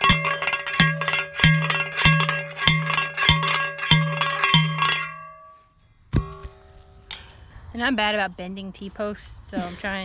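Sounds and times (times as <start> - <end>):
post driver clanging on metal post: 0.0 - 5.5.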